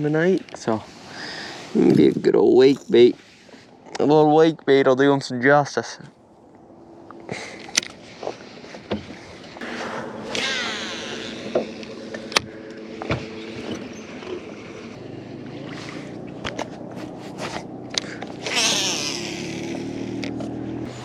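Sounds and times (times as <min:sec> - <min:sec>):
boat motor humming: 0:06.4 - 0:21.0.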